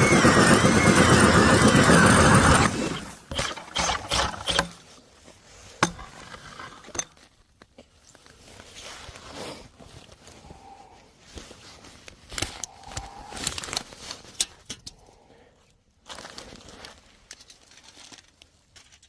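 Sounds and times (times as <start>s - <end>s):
power ice auger running: 0.0s - 4.8s.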